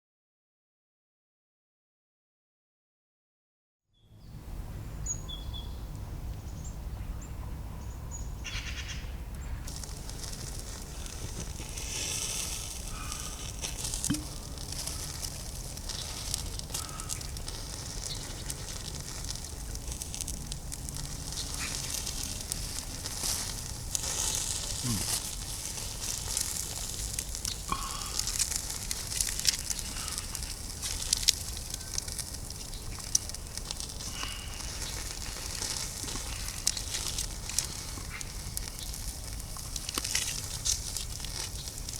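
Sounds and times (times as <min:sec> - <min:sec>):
birds chirping: 0:06.5 - 0:39.9
campfire crackling and popping: 0:09.3 - 0:41.9.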